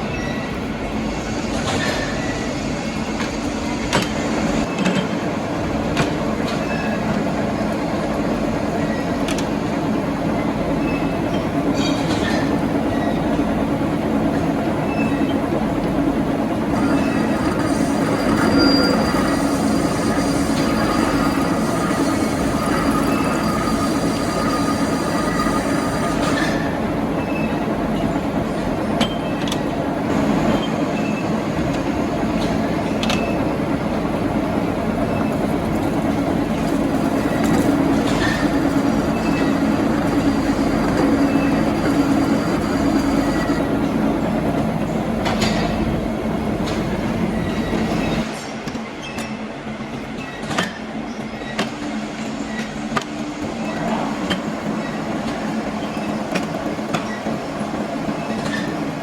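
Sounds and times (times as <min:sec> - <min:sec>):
metal lathe hum: 0:06.9 - 0:31.3, 0:32.0 - 0:48.3
thin high whine: 0:16.5 - 0:27.5, 0:35.0 - 0:45.7.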